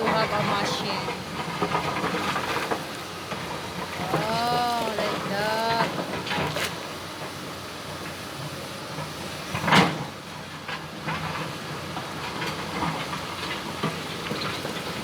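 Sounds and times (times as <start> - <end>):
excavator running: 0.0 - 9.4.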